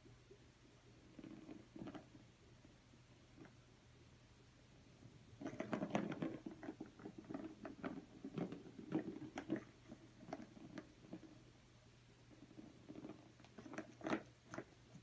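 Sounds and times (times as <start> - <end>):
cat playing with toy: 5.4 - 11.3.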